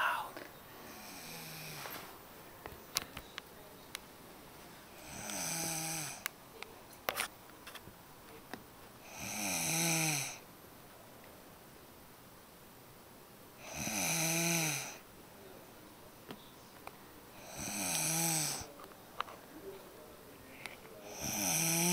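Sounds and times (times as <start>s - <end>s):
person snoring: 0.9s - 2.0s, 5.0s - 6.2s, 9.0s - 10.4s, 13.6s - 15.0s, 17.4s - 18.7s, 21.0s - 21.9s.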